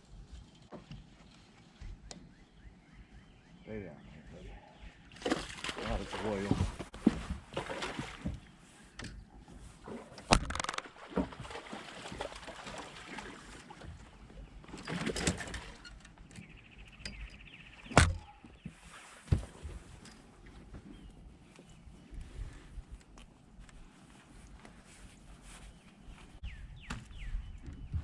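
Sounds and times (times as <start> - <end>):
water splashing: 5.1 - 8.5, 9.8 - 15.8
knocks against a boat: 17.9 - 18.7.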